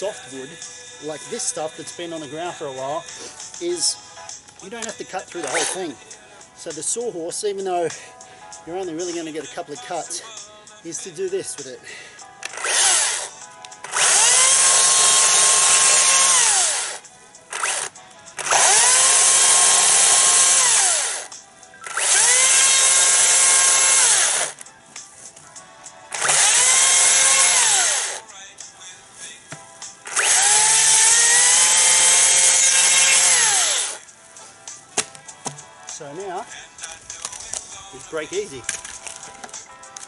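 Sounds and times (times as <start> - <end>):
battery chainsaw cutting log: 5.4 - 6.0, 12.4 - 24.6, 26.1 - 28.3, 30.0 - 34.0.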